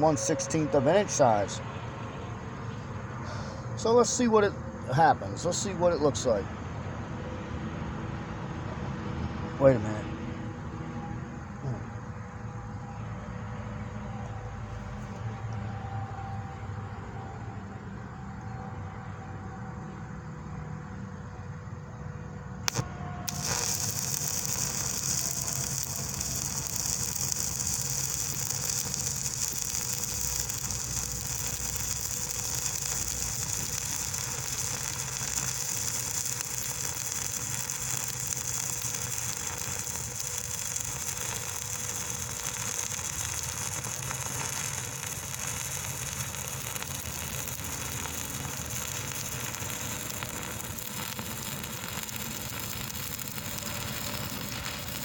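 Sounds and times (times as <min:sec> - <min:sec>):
welding arc hissing: 0:22.7 - 0:55.0
welding arc strike click: 0:22.7 - 0:55.0.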